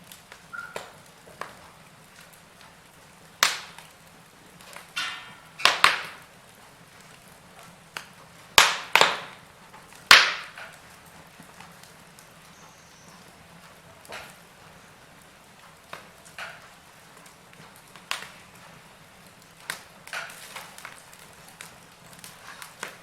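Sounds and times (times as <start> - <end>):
faint steady hiss: 0.0 - 23.0
sharp pops and snaps: 0.0 - 23.0
wood fire crackling: 0.0 - 23.0.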